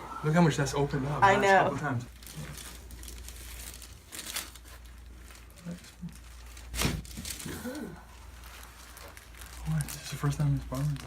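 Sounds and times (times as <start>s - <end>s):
rustling on treatment table: 2.2s - 11.0s.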